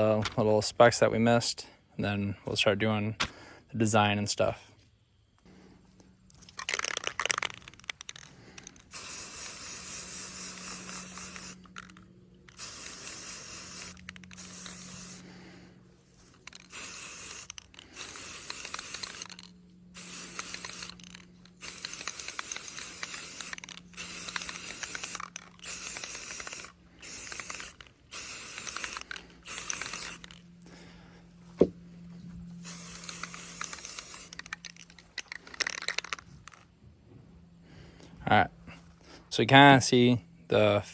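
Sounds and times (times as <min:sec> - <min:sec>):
spray paint can hissing: 0:06.5 - 0:15.3, 0:16.2 - 0:30.4, 0:32.6 - 0:36.6.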